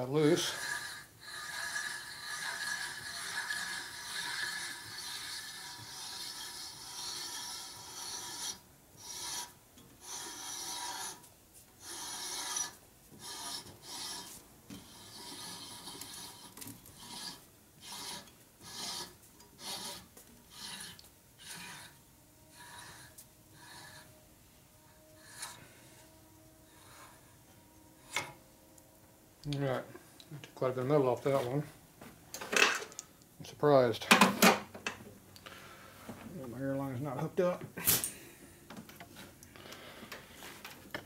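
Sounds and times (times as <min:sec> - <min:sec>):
reamer scraping metal: 0:00.0 - 0:24.2, 0:24.9 - 0:28.5.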